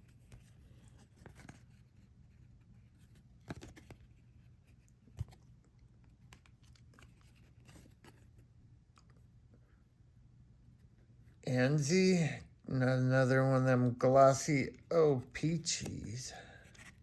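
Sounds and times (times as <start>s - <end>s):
trading cards rustling: 0.0s - 8.4s, 14.5s - 17.0s.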